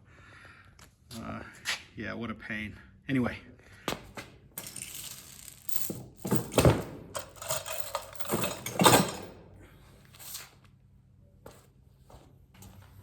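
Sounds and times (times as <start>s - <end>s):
things clattering and rustling: 4.1s - 10.6s.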